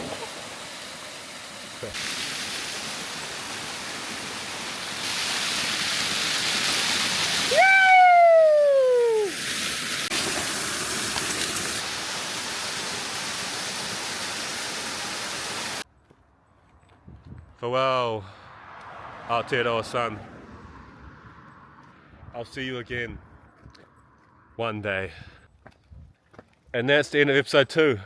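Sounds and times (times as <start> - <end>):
waterfall rushing: 0.0 - 15.8
long falling cry: 7.5 - 9.4.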